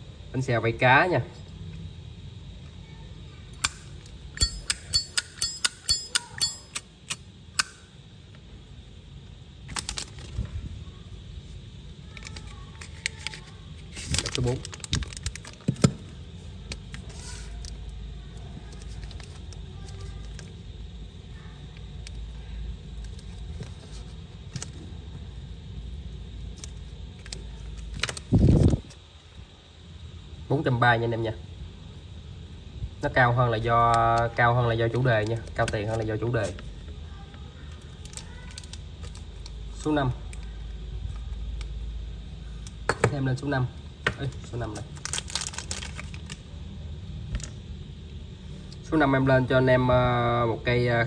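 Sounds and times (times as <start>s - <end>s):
lighter metal clicks: 3.6s - 7.8s
lighter metallic clicks: 7.6s - 7.8s.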